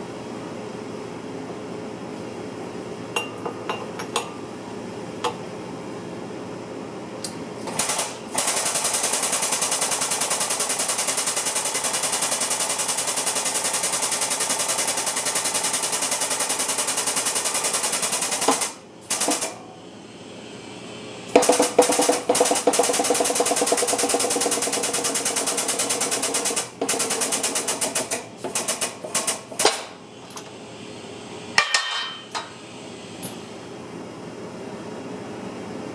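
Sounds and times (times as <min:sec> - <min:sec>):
impact wrench hammering: 0:21.4 - 0:24.4.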